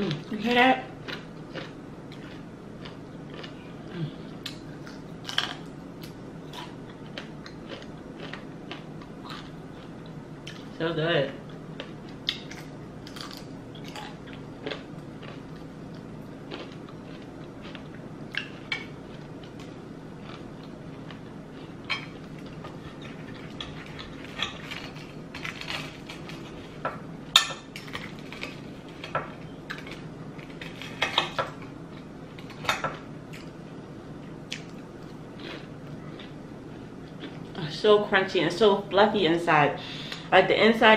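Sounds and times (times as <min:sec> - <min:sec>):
steady low hum: 0:00.0 - 0:40.9
crunchy chewing: 0:01.0 - 0:10.7, 0:11.5 - 0:26.8, 0:34.5 - 0:37.6.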